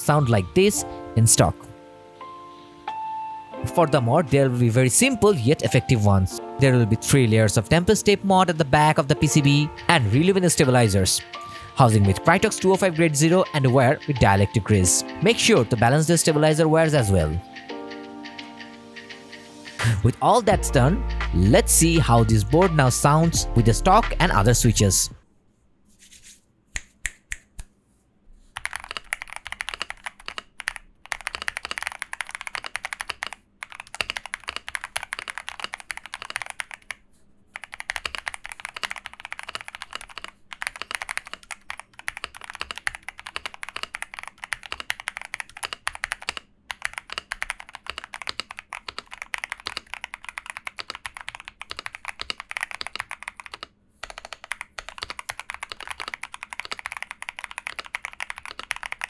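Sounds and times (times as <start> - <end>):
typing on mechanical keyboard: 28.6 - 59.0.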